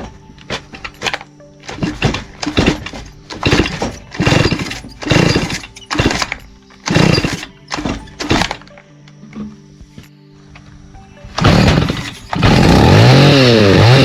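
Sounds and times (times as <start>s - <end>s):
string trimmer engine revving: 1.0s - 8.6s, 11.4s - 14.0s.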